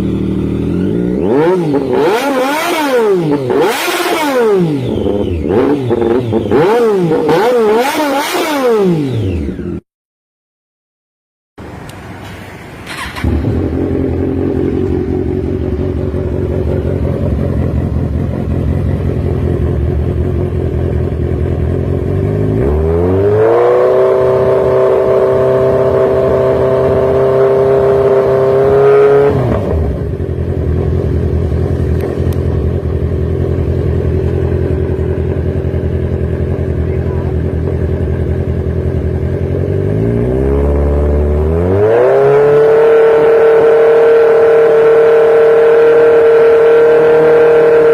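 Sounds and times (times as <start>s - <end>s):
engine exhaust idling and revving: 0.0s - 9.8s, 11.6s - 47.9s.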